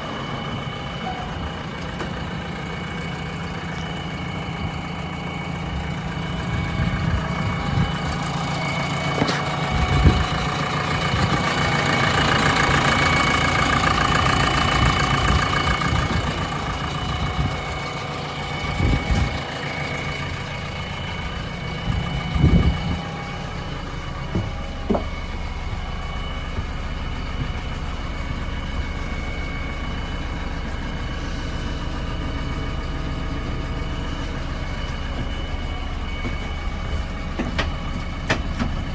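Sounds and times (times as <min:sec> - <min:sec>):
diesel engine running: 0:00.0 - 0:38.9
dull knocks: 0:24.3 - 0:25.1.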